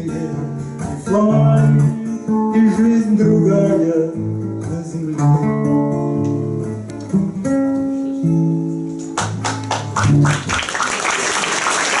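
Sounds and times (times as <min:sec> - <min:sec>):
acoustic guitar playing: 0:00.0 - 0:10.7
audience applause: 0:09.2 - 0:12.0.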